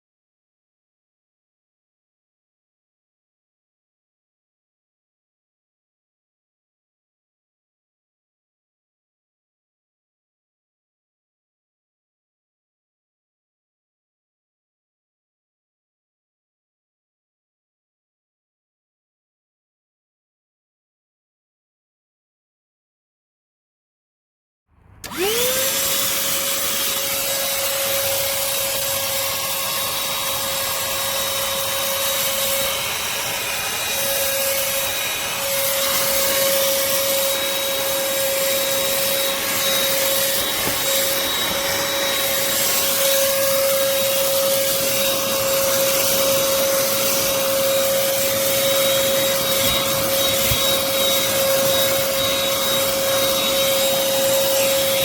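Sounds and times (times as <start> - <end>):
handheld vacuum motor whining: 25.0 - 55.0.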